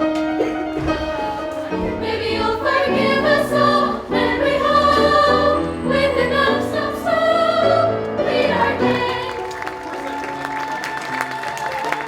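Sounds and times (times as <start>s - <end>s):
chorus singing over backing music: 0.7s - 9.9s
audience applause: 8.7s - 12.0s.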